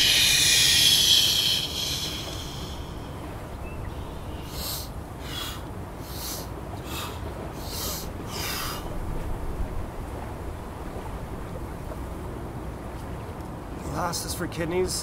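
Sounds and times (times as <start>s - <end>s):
person exhaling hissing breaths: 0.0s - 3.3s, 4.2s - 8.8s
steady low rumble: 0.0s - 12.8s.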